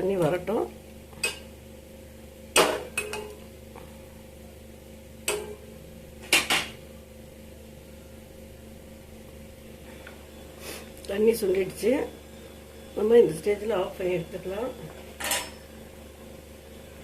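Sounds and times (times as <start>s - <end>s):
metal utensil clinking on pot: 15.2s - 15.6s.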